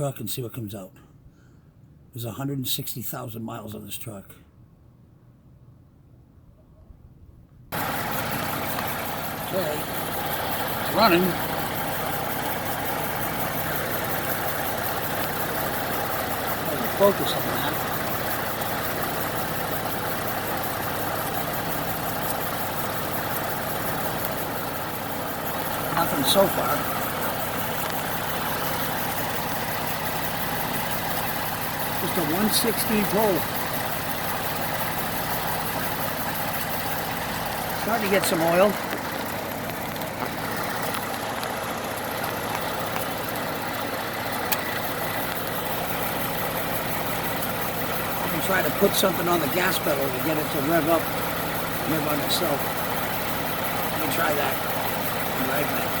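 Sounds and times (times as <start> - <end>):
car engine idling: 7.7 - 56.0
sharp tick: 44.5 - 45.4.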